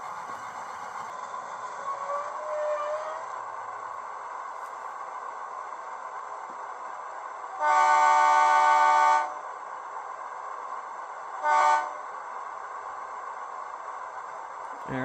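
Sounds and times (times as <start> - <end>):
model train horn: 7.6 - 9.4, 11.4 - 12.0.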